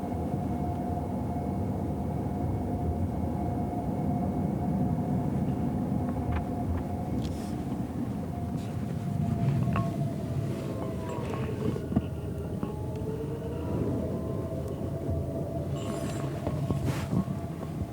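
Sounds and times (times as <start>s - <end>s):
road and tyre rumble: 5.4s - 17.9s
thin even whine: 7.3s - 17.9s.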